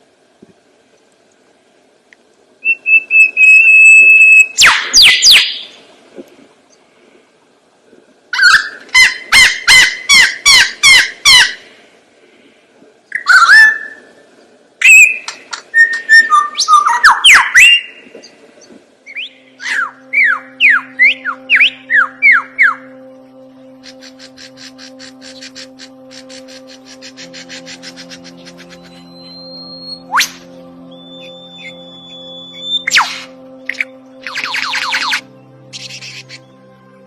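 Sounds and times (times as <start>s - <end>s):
bird whistling calls: 2.6s - 5.8s, 13.1s - 14.2s, 14.8s - 18.3s, 19.1s - 22.9s, 23.8s - 36.5s.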